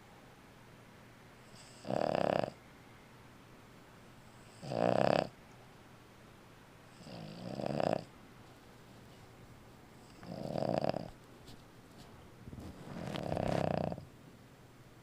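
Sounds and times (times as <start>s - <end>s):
dog snoring: 1.4s - 2.6s, 4.3s - 5.4s, 6.9s - 8.1s, 10.0s - 11.2s, 12.6s - 14.1s.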